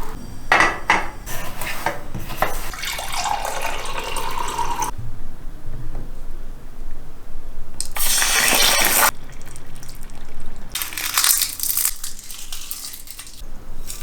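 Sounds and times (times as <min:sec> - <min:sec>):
dry crunching and crackling: 0:09.8 - 0:14.0.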